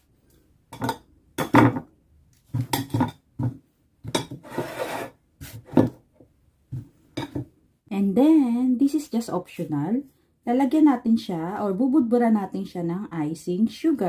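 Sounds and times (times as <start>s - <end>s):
baking sheet scraping: 4.3s - 5.9s.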